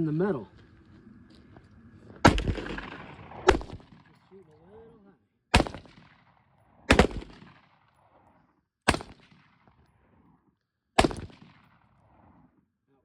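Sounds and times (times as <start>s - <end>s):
gunshots with echo: 2.2s - 4.3s, 5.5s - 7.8s, 8.9s - 9.7s, 11.0s - 11.9s.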